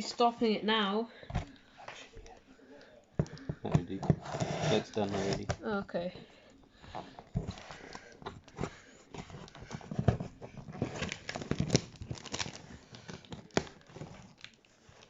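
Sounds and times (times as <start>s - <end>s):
cardboard and packaging crinkling: 3.2s - 5.6s, 7.1s - 15.0s.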